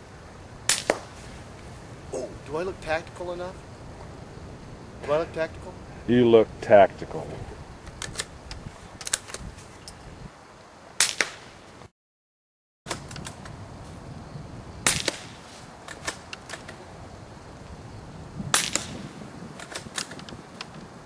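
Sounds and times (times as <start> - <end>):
suppressed rifle shots: 18.5 - 20.2.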